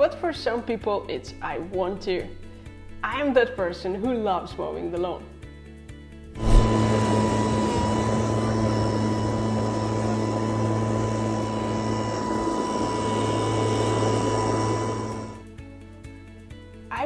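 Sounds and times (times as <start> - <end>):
electric lawn mower running: 6.7 - 15.4.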